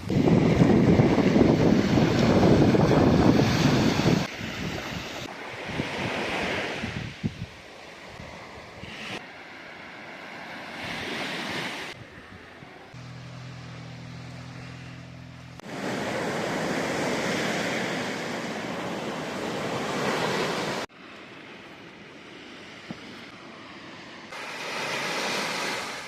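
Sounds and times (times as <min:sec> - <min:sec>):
sea waves washing onto shore: 0:00.0 - 0:12.0, 0:15.6 - 0:26.0
low motor hum: 0:12.0 - 0:17.7.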